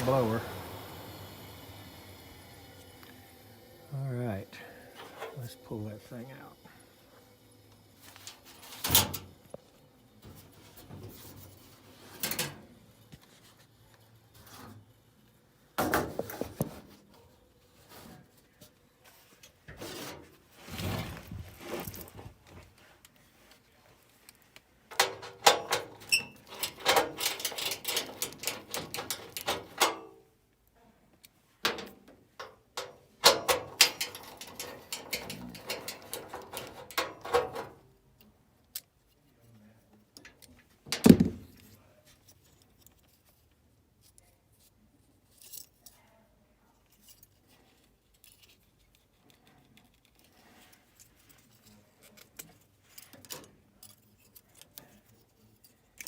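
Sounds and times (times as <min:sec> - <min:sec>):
metal tools clinking and rattling: 0:24.9 - 0:30.1, 0:31.7 - 0:37.7.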